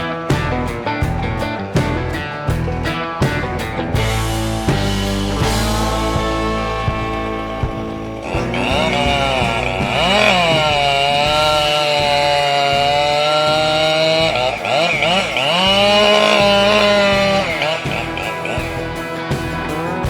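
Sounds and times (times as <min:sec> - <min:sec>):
chainsaw cutting wood: 0:04.6 - 0:19.8.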